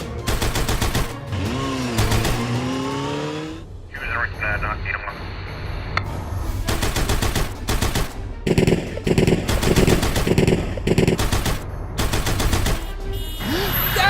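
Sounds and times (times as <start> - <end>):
rapid clicking rattle: 0.3 - 1.2, 6.7 - 12.9.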